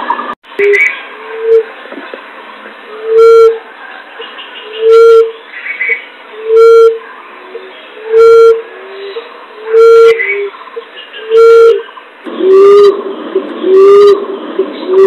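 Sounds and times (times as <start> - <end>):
dove cooing: 2.9 - 3.6, 4.6 - 5.3, 6.3 - 10.5, 11.2 - 15.0.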